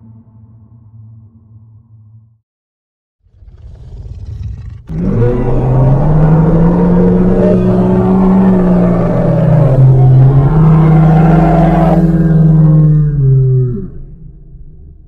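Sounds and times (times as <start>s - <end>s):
monster roar: 3.3s - 14.2s
low rumble: 3.3s - 15.0s.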